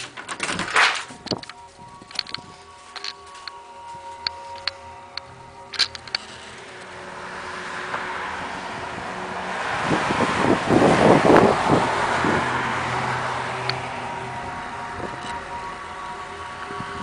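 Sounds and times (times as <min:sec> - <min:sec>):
loud rushing rumble: 0:05.2 - 0:17.0.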